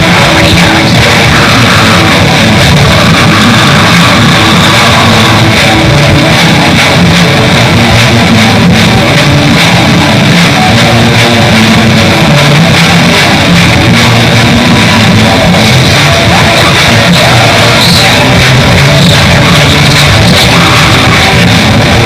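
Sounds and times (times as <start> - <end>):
bass: 0.0 - 22.0
distorted electric guitars: 0.0 - 22.0
drums: 0.0 - 22.0.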